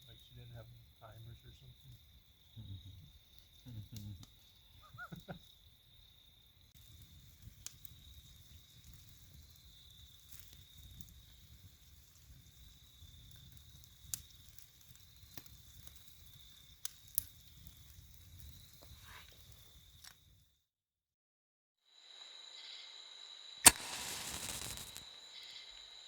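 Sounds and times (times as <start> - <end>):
campfire crackling and popping: 1.6 - 20.4, 23.6 - 25.2.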